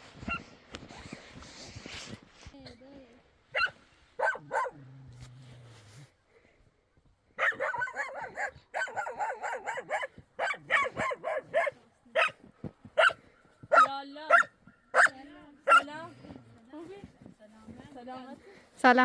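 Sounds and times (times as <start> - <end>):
dog barking: 3.5 - 4.8, 7.4 - 12.4, 13.0 - 16.1.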